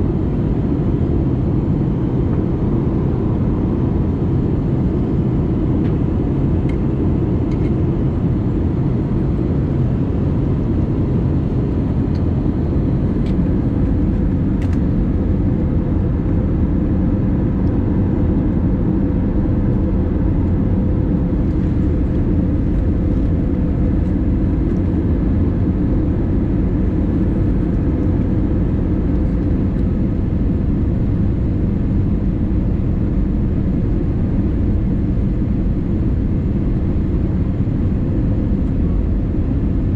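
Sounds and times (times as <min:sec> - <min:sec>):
faint constant hum: 0:00.0 - 0:39.9.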